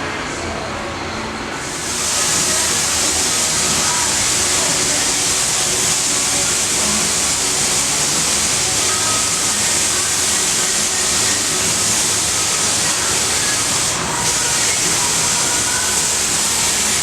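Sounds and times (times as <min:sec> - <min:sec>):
compressed air hiss: 0:01.5 - 0:17.0.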